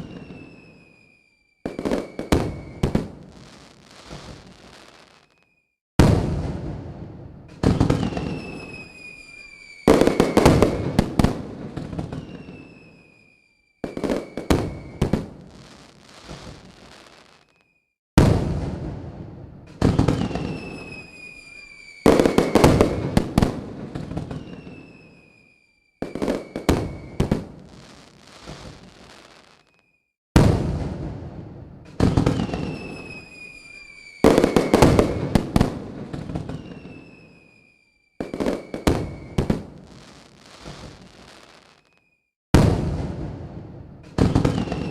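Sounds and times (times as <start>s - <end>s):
firework booms: 0.0s - 4.9s, 6.0s - 17.5s, 18.2s - 29.4s, 30.4s - 41.5s, 42.5s - 44.9s
falling firework whistle: 0.0s - 6.6s, 7.5s - 18.5s, 19.8s - 30.6s, 31.9s - 42.8s, 44.1s - 44.9s
rapid firework crackling: 1.7s - 5.2s, 26.1s - 29.6s.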